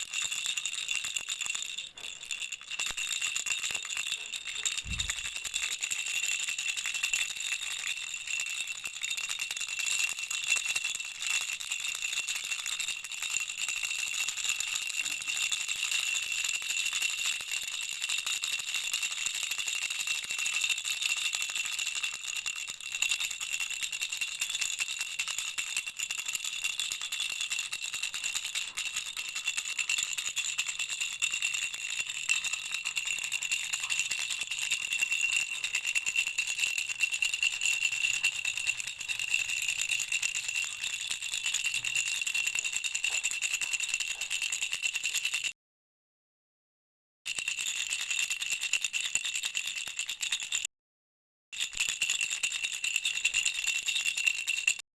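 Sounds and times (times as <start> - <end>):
baby rattle jingling: 0.0 - 7.4.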